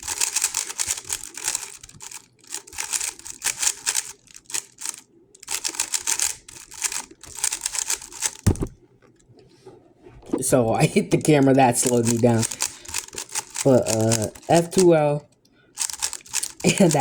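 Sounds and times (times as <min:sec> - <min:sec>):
speedcube clicking: 0:00.0 - 0:08.4, 0:11.8 - 0:14.9, 0:15.8 - 0:17.0
low thump: 0:08.5 - 0:08.8.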